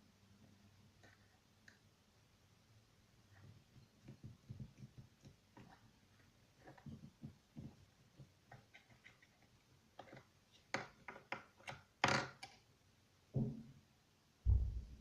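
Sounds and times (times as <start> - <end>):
low thumps: 14.5 - 15.0.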